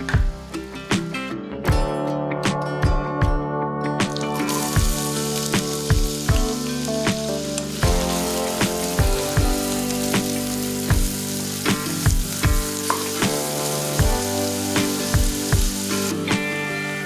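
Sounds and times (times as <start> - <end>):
music with steady drum beat: 0.0 - 17.0
food sizzling in a pan: 4.1 - 17.0
stirring in a pan: 4.2 - 17.0.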